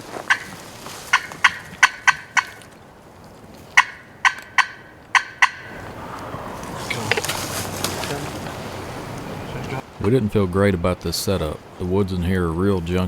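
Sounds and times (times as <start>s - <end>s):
turkey calling sharp notes: 0.0s - 2.8s, 3.6s - 9.8s.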